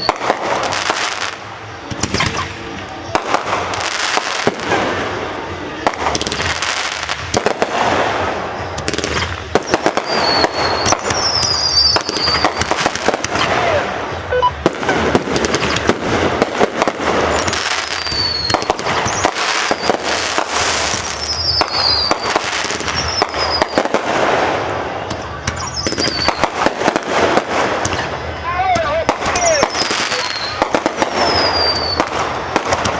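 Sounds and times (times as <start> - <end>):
fireworks bangs and crackling: 0.0 - 32.9
high falling whistles: 9.6 - 12.7, 17.3 - 20.2, 21.0 - 23.9, 25.6 - 26.6, 29.3 - 32.2.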